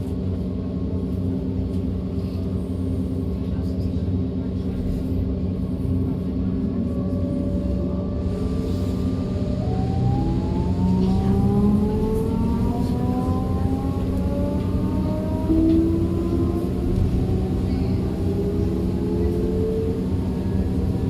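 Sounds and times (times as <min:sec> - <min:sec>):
train rumble: 0:00.0 - 0:21.0
train motors whining: 0:06.8 - 0:20.1.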